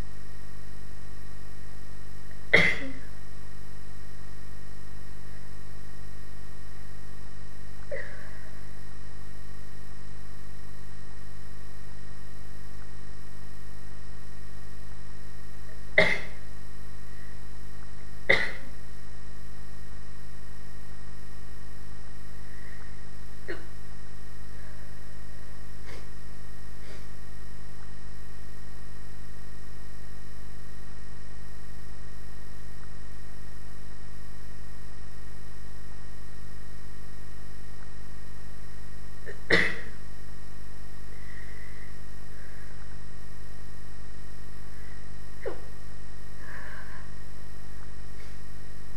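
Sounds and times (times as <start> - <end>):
steady low hum: 0.0 - 48.9
person sneezing: 2.6 - 3.1, 16.0 - 16.4, 18.3 - 18.7, 25.8 - 26.2, 26.8 - 27.2, 39.3 - 40.0, 45.4 - 45.7, 46.4 - 47.1.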